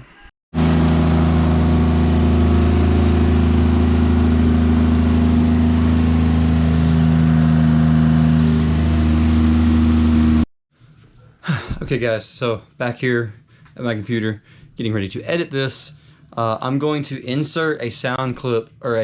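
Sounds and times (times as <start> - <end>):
car engine running: 0.6 - 10.5.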